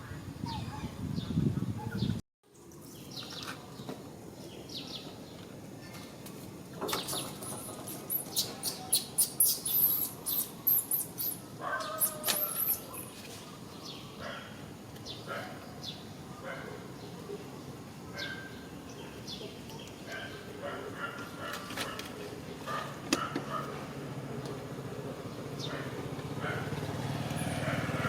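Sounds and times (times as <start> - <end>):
faint outdoor background: 0.0 - 28.0
high-pitched animal squeaks: 12.0 - 13.0.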